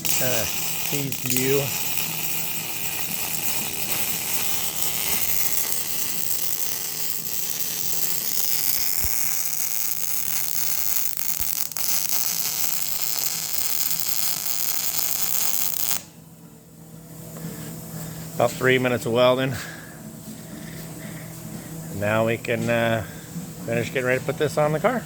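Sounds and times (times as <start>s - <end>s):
welding arc sizzling: 0.0s - 16.1s.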